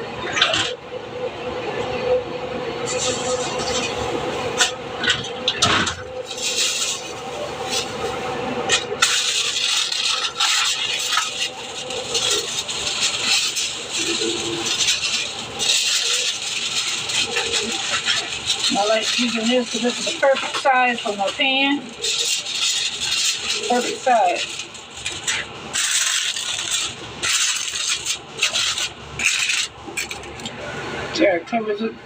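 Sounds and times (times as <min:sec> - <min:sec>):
rustling and scraping: 0:04.6 - 0:30.5.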